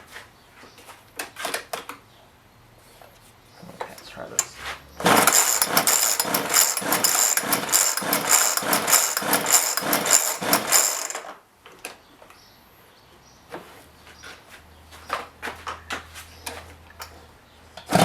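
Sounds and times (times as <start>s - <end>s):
chainsaw starter cord pulled: 5.0s - 11.4s.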